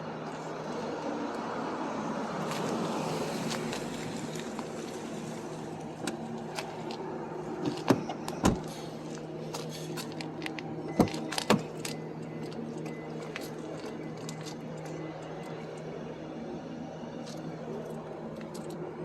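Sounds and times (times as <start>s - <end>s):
car door thumps: 7.6s - 8.7s.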